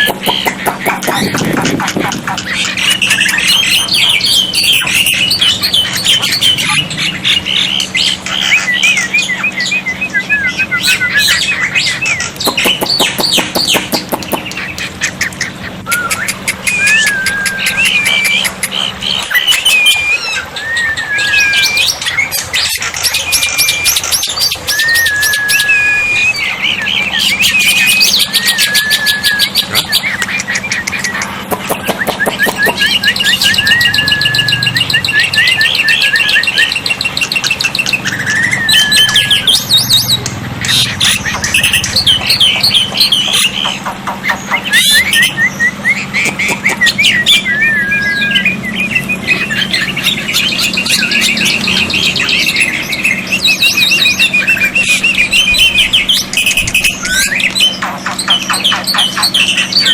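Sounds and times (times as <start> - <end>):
bird whistles trills and squawks: 0.0 - 59.9.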